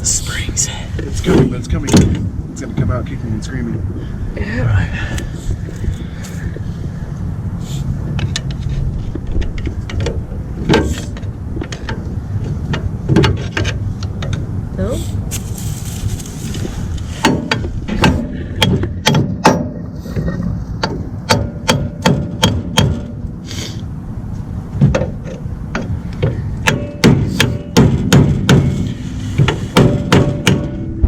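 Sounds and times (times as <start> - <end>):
hammer striking metal: 20.8 - 23.2, 26.6 - 28.7, 29.8 - 30.9.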